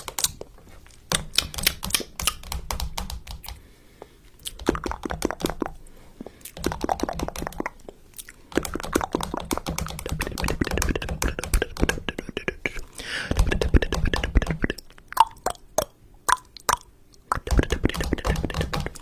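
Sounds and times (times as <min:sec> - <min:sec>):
rapid irregular clicks: 0:01.1 - 0:03.6, 0:06.5 - 0:07.9, 0:08.5 - 0:14.8, 0:17.4 - 0:19.0.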